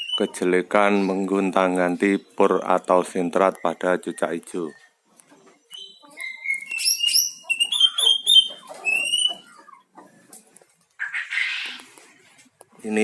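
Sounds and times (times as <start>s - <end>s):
bird whistling and chirping: 0.0s - 0.3s, 5.7s - 9.7s.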